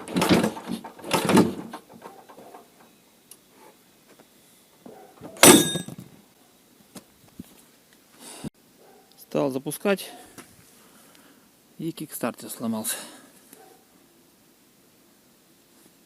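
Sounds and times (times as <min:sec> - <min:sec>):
loud metallic clank: 0:05.4 - 0:06.0.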